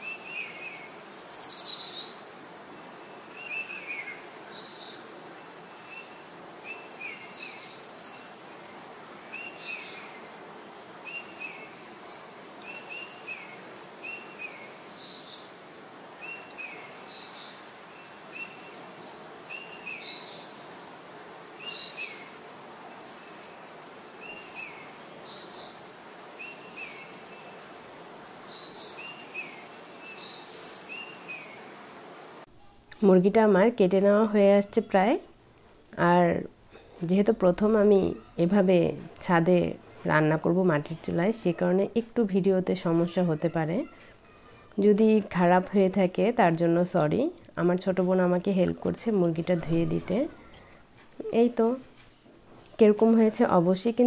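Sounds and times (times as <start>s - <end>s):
birds chirping: 0.0s - 32.4s
outdoor background noise: 0.0s - 54.0s.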